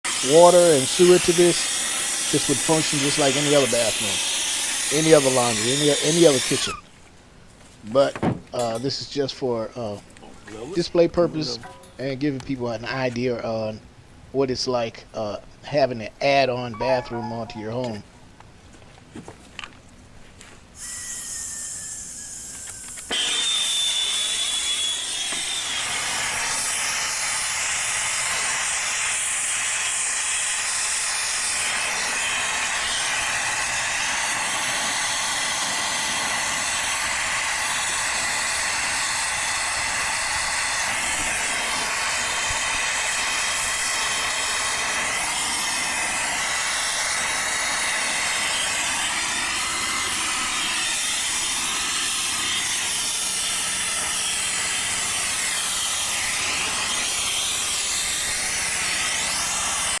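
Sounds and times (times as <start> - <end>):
gas torch hissing: 0.0 - 6.8, 20.8 - 60.0
thin whistle: 16.7 - 17.8, 20.8 - 25.0.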